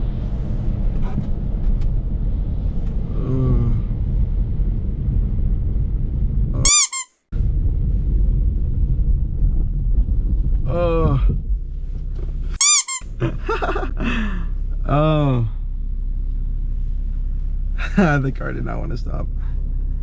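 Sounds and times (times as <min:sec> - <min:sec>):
car engine and tyres on snow: 0:00.0 - 0:06.8, 0:07.4 - 0:20.0
sharp high squeak: 0:06.6 - 0:07.1, 0:12.6 - 0:13.1
squeak falling in pitch: 0:06.6 - 0:07.1, 0:12.6 - 0:13.1.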